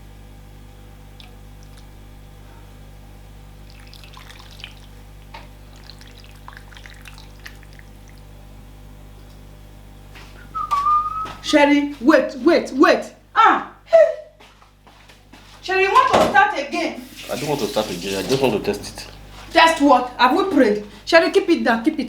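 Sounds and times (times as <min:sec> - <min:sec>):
steady low hum: 0:00.0 - 0:16.0
small liquid sounds: 0:01.1 - 0:02.1, 0:03.5 - 0:08.5, 0:17.0 - 0:18.5.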